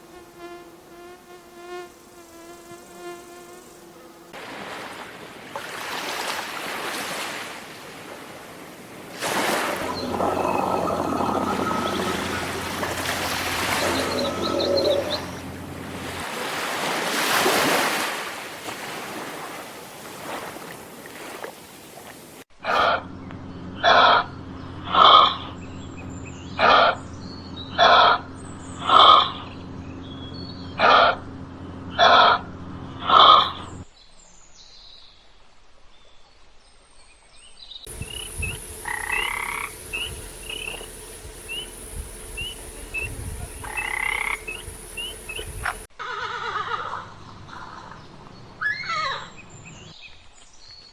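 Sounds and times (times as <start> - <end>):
steady rushing noise: 8.9 - 17.0, 37.9 - 45.9
frog croaking: 9.2 - 16.5, 23.8 - 27.0, 27.6 - 29.6, 31.9 - 33.8, 37.9 - 45.9
high steady hiss: 37.9 - 45.9
small chirps: 37.9 - 45.9.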